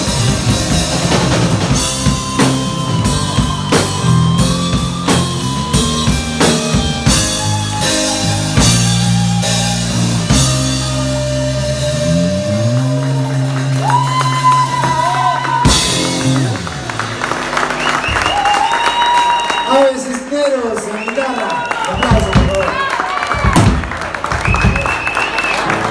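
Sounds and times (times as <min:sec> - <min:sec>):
long sliding guitar notes: 0:00.0 - 0:18.7
rock music with drums and guitar: 0:00.0 - 0:19.6
drum beats: 0:00.0 - 0:19.8, 0:21.9 - 0:25.9.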